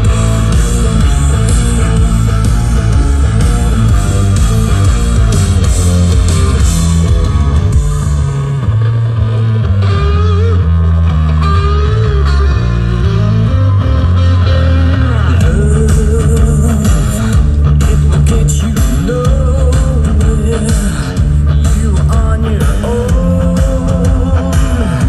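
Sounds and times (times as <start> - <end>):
guitar with bending notes: 0.0 - 25.0
heavy bass: 0.0 - 25.0
instrumental rock music: 0.0 - 25.0.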